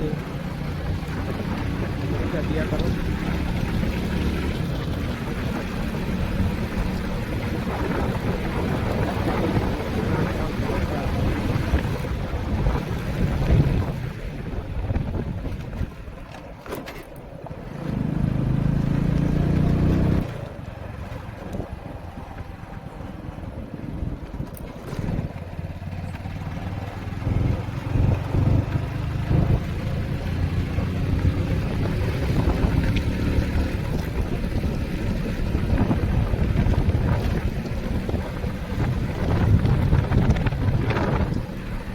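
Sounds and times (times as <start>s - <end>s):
motorcycle engine running: 0.0s - 41.9s
wind buffeting microphone: 0.0s - 41.9s.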